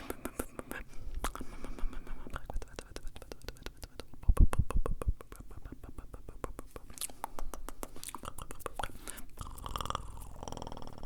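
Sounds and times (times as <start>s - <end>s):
buzzy hummed vocal sound: 0.0s - 11.0s
tongue and lip clicks: 0.0s - 11.0s.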